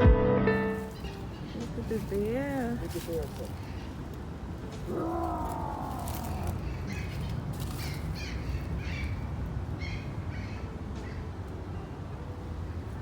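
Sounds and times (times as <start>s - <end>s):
crow cawing: 4.8s - 9.2s.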